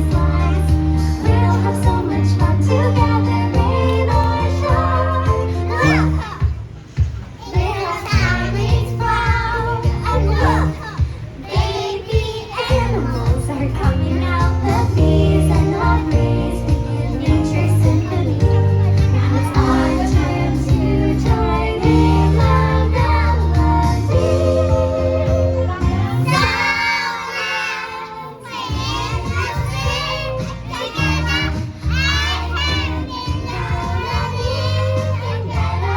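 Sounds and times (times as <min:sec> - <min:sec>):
backing track with bass line: 0:00.0 - 0:06.4, 0:12.8 - 0:26.9
young children singing: 0:00.0 - 0:35.9.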